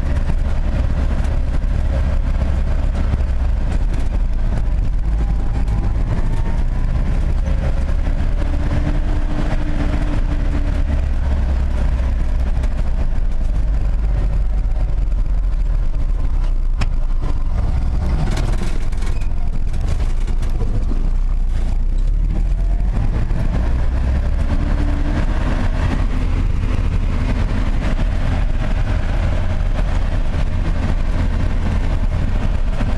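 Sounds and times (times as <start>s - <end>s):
vehicle engine and road rumble: 0.0s - 32.9s.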